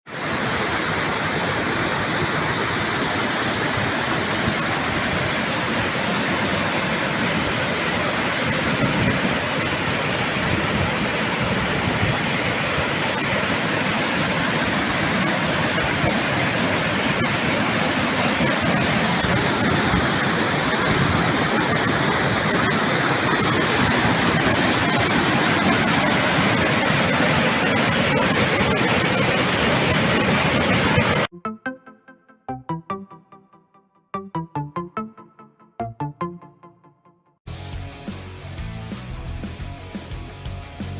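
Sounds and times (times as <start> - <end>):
water rushing: 0.1 - 31.3.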